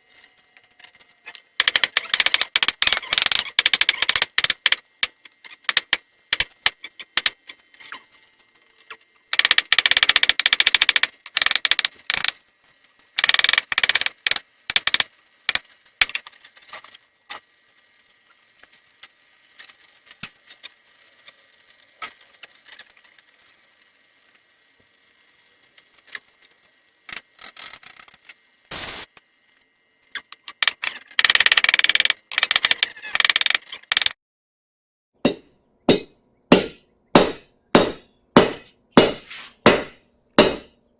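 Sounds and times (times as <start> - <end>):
hammer blows on hot steel: 35.3 - 40.7.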